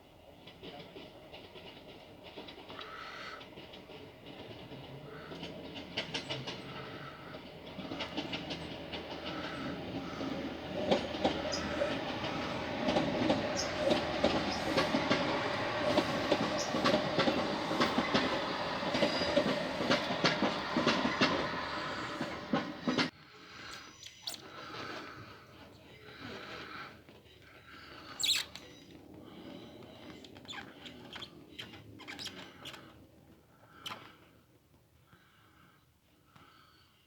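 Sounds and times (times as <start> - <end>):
train humming: 0.0 - 23.1
train wheels clicking over rail joints: 0.1 - 23.1.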